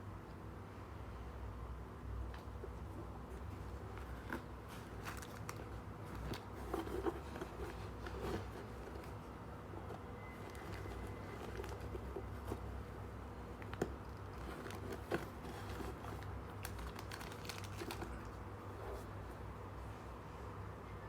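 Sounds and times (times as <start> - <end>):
packaging rustling and tapping: 3.7 - 12.9, 13.6 - 18.4.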